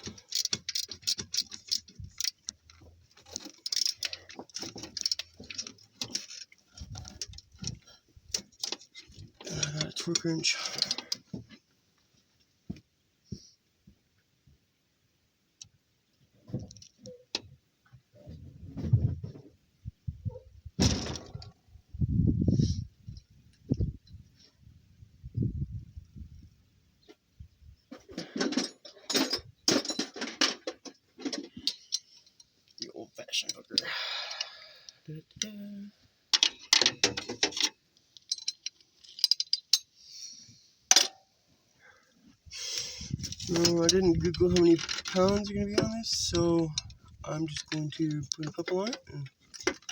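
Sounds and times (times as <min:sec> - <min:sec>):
metal hand tools clicking: 0:00.0 - 0:02.4
hand tools clicking and knocking: 0:00.0 - 0:11.5, 0:28.2 - 0:34.6, 0:36.4 - 0:39.9, 0:40.9 - 0:41.2, 0:43.2 - 0:49.9.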